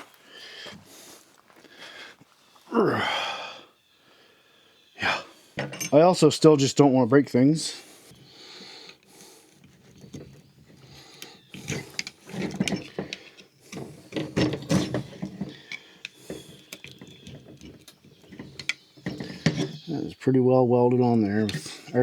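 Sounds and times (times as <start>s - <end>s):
tool scraping and clicking on plastic: 8.9s - 19.9s.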